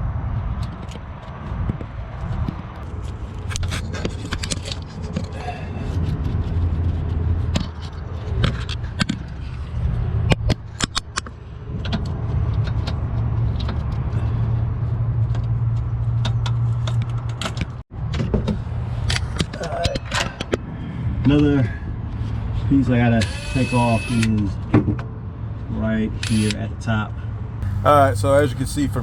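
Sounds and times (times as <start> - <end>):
engine running hum: 27.6 - 29.0.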